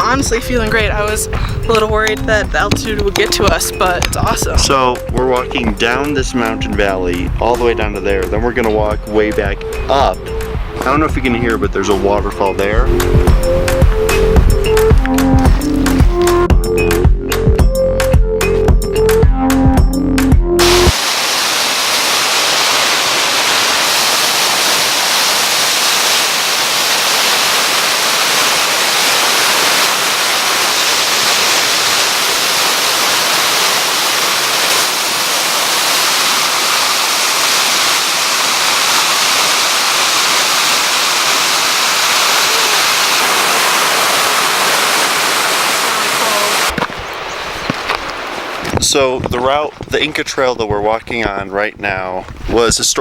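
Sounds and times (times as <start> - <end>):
waterfall roaring: 0.0 - 4.6, 20.6 - 49.8.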